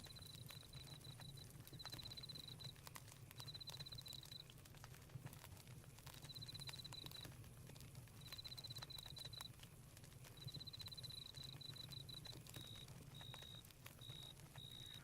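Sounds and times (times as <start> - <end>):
campfire crackling: 0.0 - 15.0
crickets chirping: 10.4 - 15.0.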